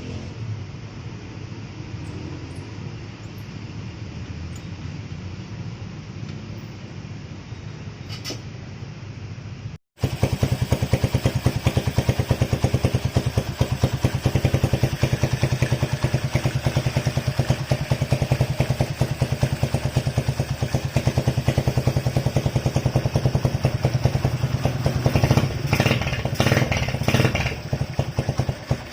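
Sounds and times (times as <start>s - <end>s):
motorcycle engine idling: 10.0s - 28.9s.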